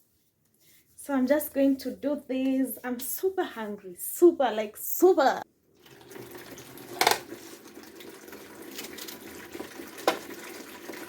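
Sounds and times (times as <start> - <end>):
water running from kitchen tap: 5.7 - 11.0.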